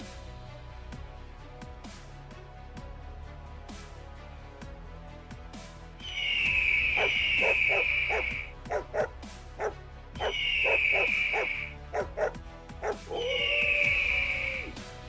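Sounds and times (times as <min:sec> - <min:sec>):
music with long high tone: 0:00.0 - 0:15.0
dog barking and yipping: 0:07.0 - 0:13.6.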